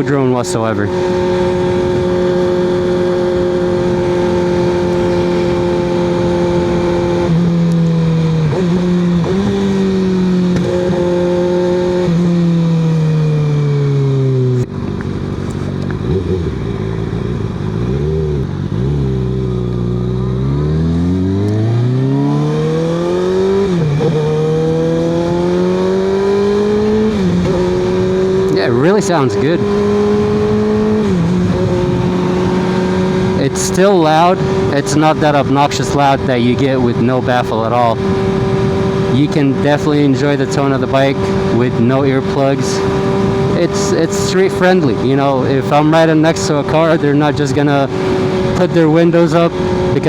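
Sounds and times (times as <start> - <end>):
motorcycle engine revving: 0.0 - 50.0
motorcycle gear change: 1.0 - 28.6.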